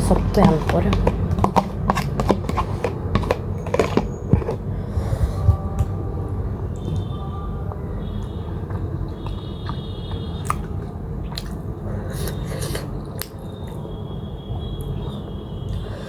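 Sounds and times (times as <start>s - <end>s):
person chewing wet food: 0.0s - 16.0s
steady low hum: 0.0s - 16.0s.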